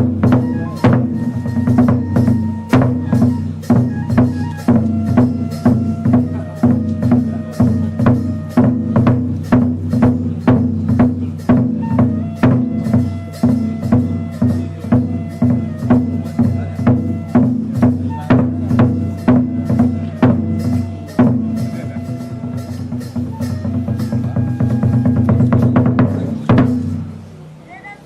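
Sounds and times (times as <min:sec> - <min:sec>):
sustained high flute tones: 0:00.0 - 0:10.6, 0:11.4 - 0:26.3
drum struck in quick beat: 0:00.0 - 0:27.2.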